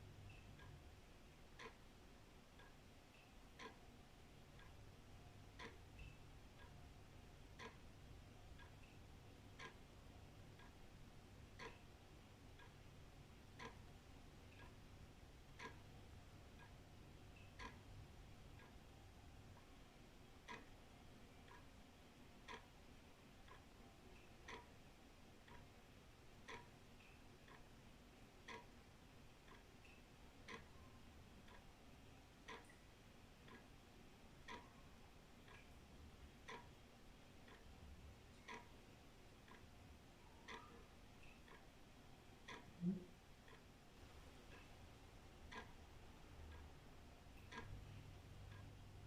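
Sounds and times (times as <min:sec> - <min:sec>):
wall clock ticking: 0:00.0 - 0:49.0.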